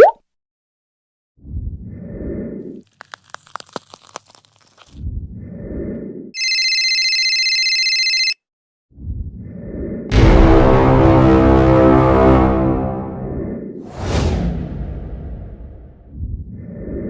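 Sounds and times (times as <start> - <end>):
telephone bell ringing: 6.4 - 8.4
low noise burst: 10.1 - 16.0.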